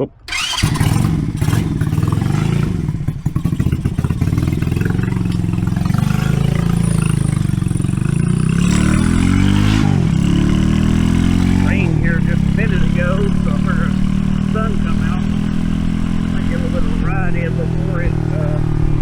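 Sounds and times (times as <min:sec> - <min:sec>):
pit bike engine running: 0:00.3 - 0:19.0.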